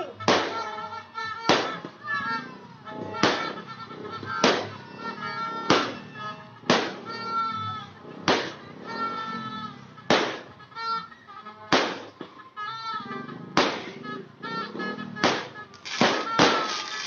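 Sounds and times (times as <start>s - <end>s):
music with held melody: 0.0s - 17.0s
firecracker bangs: 0.2s - 0.9s, 1.5s - 1.9s, 3.1s - 7.4s, 8.3s - 8.6s, 10.1s - 10.5s, 11.7s - 12.2s, 13.6s - 14.2s, 15.2s - 17.0s.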